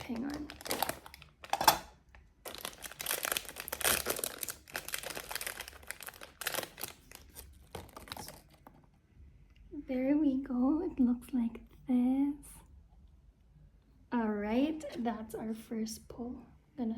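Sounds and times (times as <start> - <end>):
plastic packaging crinkling and tearing: 0.0 - 8.7.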